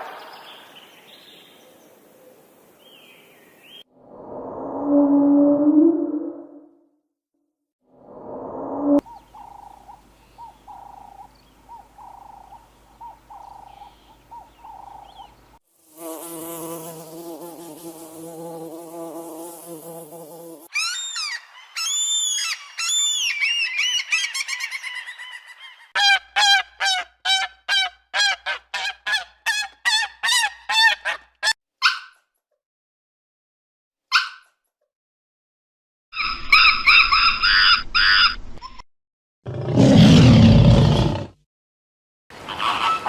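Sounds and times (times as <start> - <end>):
rising and falling chirps: 20.7 - 25.5
rough pitched animal call: 42.5 - 43.0.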